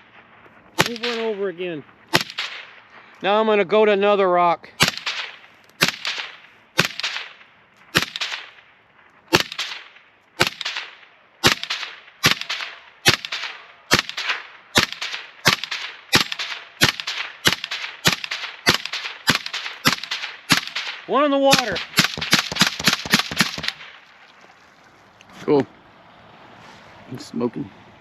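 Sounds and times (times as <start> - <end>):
suppressed pistol shots: 0.8 - 1.4, 2.1 - 2.8, 4.8 - 8.7, 9.3 - 24.0.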